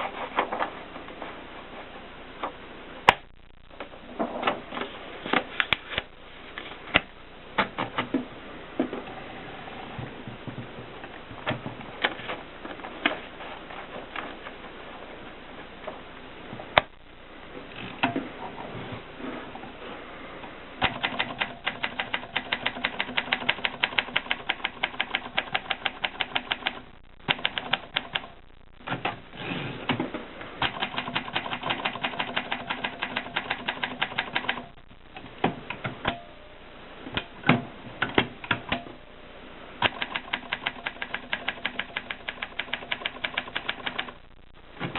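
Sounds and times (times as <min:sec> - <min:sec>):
typewriter keystrokes: 0:20.8 - 0:28.3, 0:30.6 - 0:34.7, 0:39.8 - 0:44.2.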